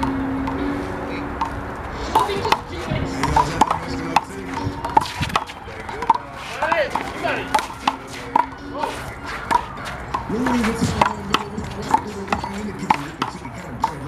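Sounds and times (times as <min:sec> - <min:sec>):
faint voices: 0:00.2 - 0:14.0.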